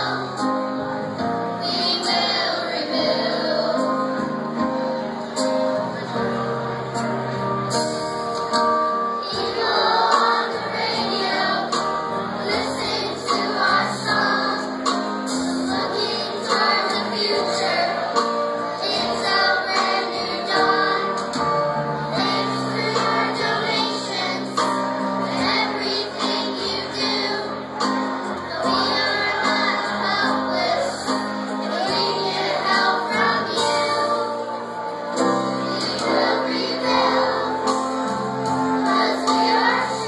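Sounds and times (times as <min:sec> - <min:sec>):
children singing in unison: 0:00.0 - 0:04.8, 0:09.1 - 0:40.0
instrumental accompaniment: 0:00.0 - 0:40.0.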